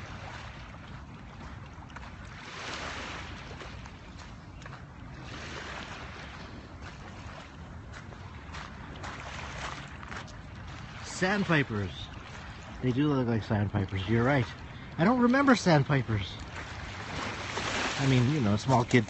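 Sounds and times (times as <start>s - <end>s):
small waves breaking on sand: 0.0s - 19.0s
rush of surf: 10.9s - 13.2s, 14.3s - 19.0s.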